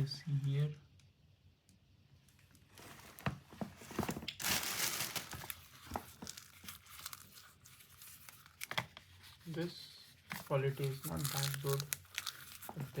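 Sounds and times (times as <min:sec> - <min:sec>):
fabric bag rustling: 0:02.7 - 0:08.6, 0:10.3 - 0:13.0.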